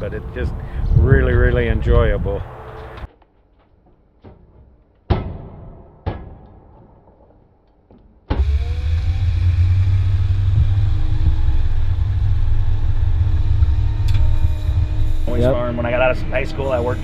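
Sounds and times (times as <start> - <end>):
vehicle engine and road rumble: 0.0 - 3.2, 8.4 - 17.0.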